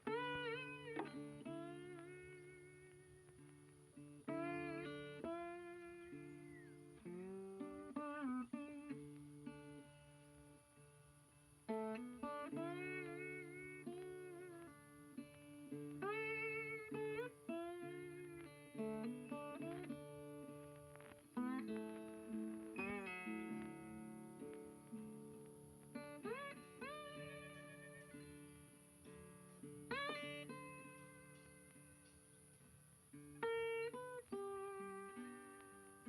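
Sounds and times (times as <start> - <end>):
plucked guitar with bends: 0.0 - 36.0.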